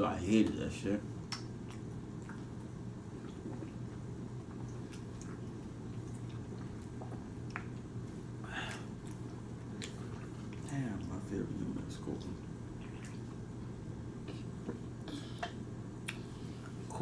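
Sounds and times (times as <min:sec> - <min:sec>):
low electrical hum: 0:00.0 - 0:17.0
wet mouth clicks and chewing: 0:01.2 - 0:02.6, 0:03.2 - 0:07.9, 0:15.4 - 0:16.3.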